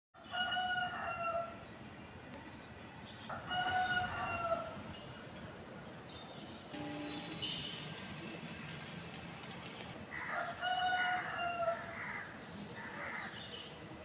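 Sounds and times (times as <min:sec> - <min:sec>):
rooster crowing: 0:00.3 - 0:01.6, 0:10.2 - 0:11.9.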